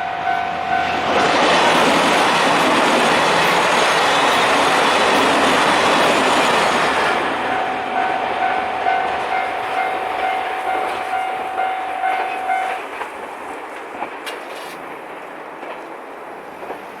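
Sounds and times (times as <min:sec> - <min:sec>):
level crossing warning bell: 0:00.0 - 0:13.0
train rumble and wheel clatter: 0:00.0 - 0:17.0.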